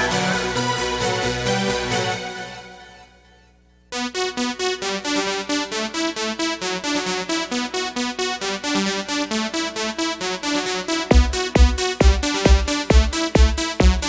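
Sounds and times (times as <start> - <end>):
dance song: 0.0 - 2.4, 11.1 - 14.0
synthesizer keyboard riff: 0.0 - 2.4.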